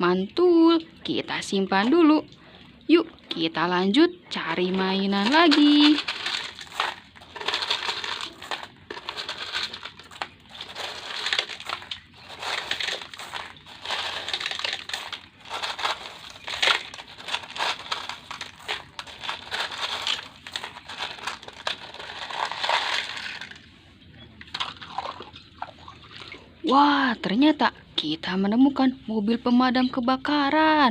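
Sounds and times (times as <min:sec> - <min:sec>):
gravel being stirred: 0:04.4 - 0:23.7.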